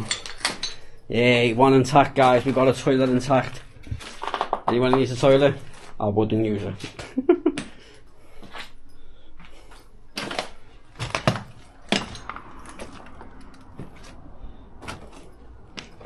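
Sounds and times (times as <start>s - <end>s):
footsteps crunching over rubble: 1.7s - 7.0s, 9.4s - 16.0s.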